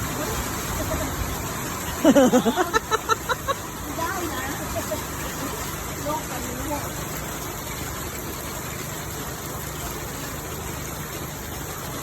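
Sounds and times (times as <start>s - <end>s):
heavy rain falling: 0.0s - 12.0s.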